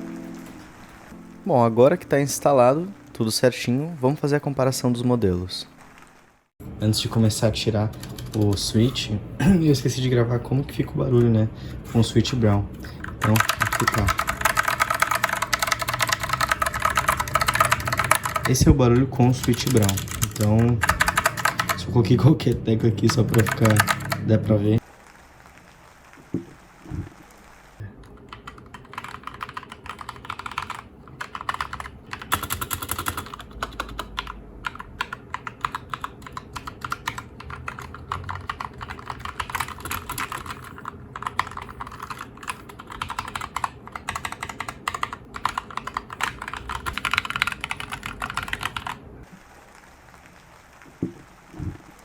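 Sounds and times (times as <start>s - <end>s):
mechanical keyboard typing: 7.9s - 9.0s, 12.9s - 24.4s, 28.0s - 49.0s.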